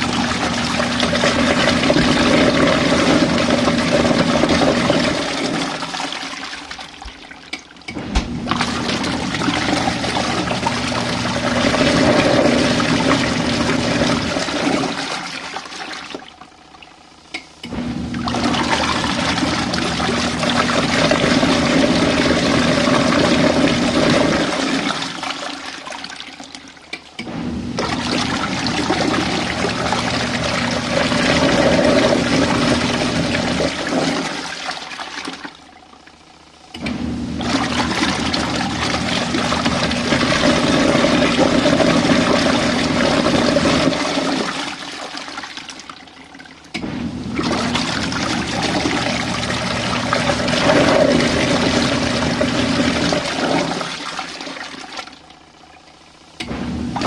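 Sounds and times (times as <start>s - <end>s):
washing machine motor hum: 0.0s - 57.0s
water churning in washing machine: 0.0s - 57.0s.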